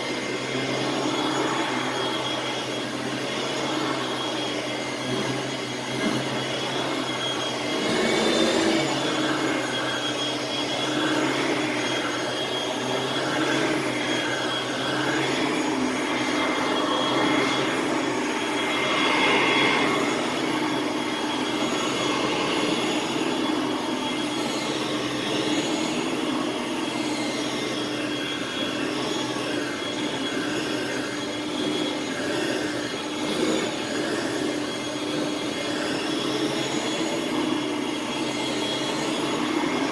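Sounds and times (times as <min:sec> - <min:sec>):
upright vacuum cleaner running: 0:00.0 - 0:39.9.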